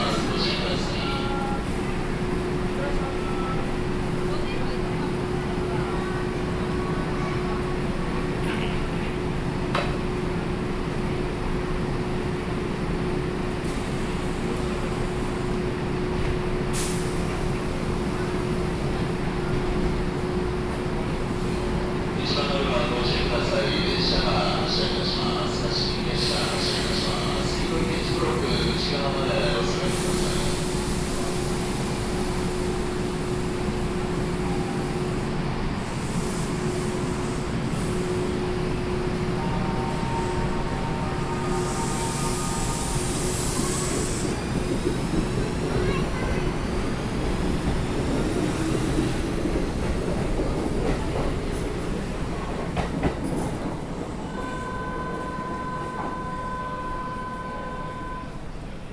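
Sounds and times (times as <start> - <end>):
train rumbling: 0.0 - 58.9
compressed air hisses: 41.5 - 44.4.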